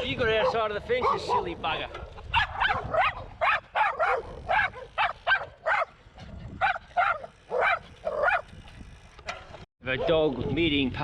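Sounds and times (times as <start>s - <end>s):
dog barking: 0.4s - 1.5s, 2.3s - 5.9s, 6.6s - 8.4s.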